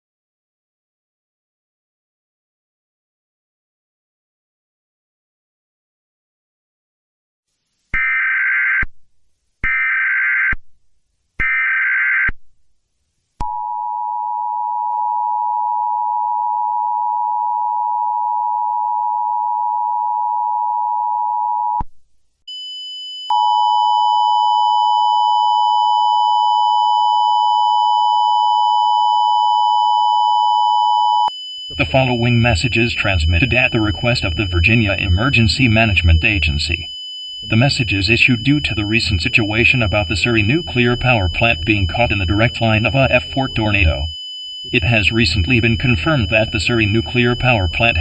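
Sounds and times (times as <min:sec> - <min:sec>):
high steady tone: 0:29.2 - 0:48.0
two-tone attention signal: 0:29.6 - 0:48.0
digital alert header bursts: 0:31.7 - 0:48.0.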